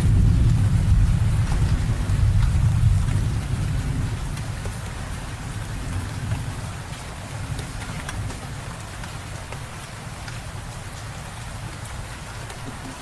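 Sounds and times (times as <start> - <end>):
low rumble of thunder: 0.0 - 8.8
rain falling: 0.0 - 13.0.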